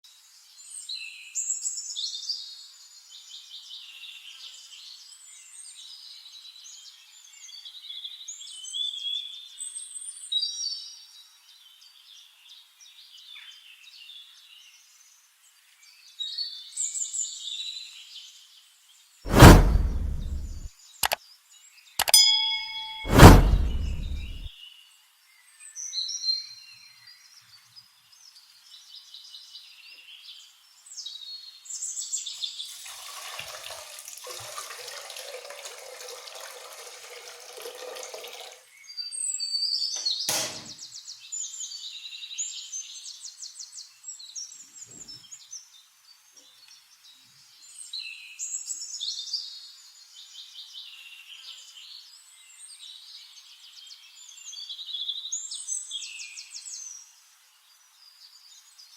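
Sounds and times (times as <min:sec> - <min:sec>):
sharp knock: 0:19.3 - 0:21.2, 0:22.0 - 0:24.5, 0:40.3 - 0:40.7
water running: 0:32.7 - 0:38.6.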